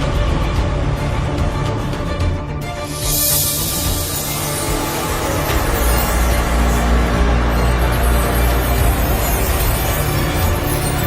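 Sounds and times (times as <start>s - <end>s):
dense soundtrack music: 0.0s - 11.0s
low drone: 0.0s - 11.0s.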